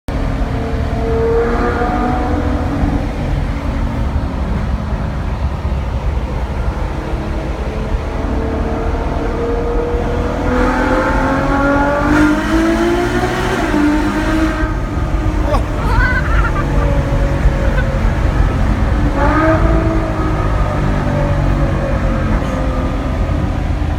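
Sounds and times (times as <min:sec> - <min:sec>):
car engine running: 0:11.4 - 0:23.9.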